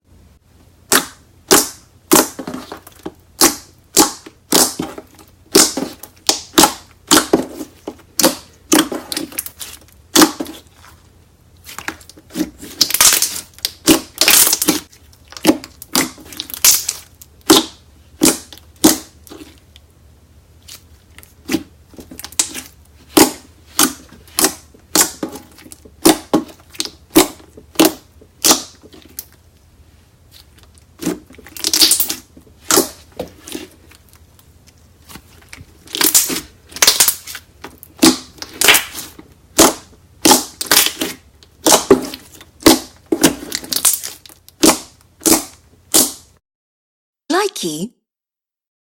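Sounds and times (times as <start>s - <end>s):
slime popping and crackling: 0.9s - 10.8s, 11.6s - 19.6s, 20.6s - 29.3s, 30.3s - 46.3s.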